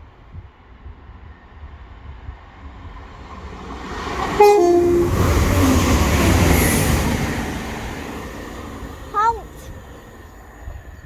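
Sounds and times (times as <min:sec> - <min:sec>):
rush and rumble of passing train: 0:00.0 - 0:11.0
train horn blast: 0:04.2 - 0:08.0.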